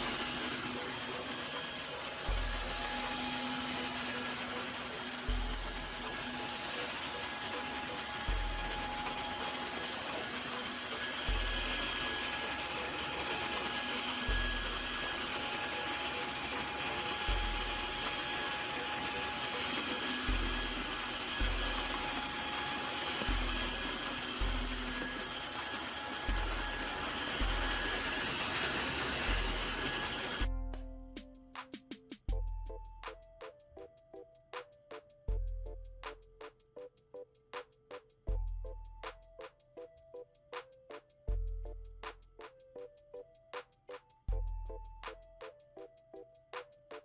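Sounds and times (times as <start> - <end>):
cordless vacuum running: 0.0 - 30.5.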